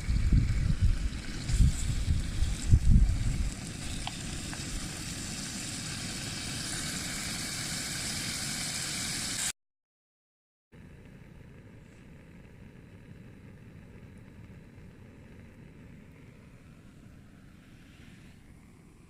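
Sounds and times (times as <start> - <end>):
wind buffeting microphone: 0.0 - 5.2
campfire hissing and crackling: 0.0 - 9.5, 10.8 - 19.0.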